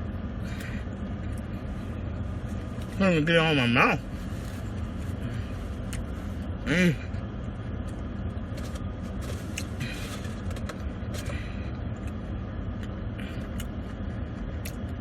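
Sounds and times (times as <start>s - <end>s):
motor vehicle rumble: 0.0s - 15.0s
faint rustles and clicks: 4.0s - 6.4s.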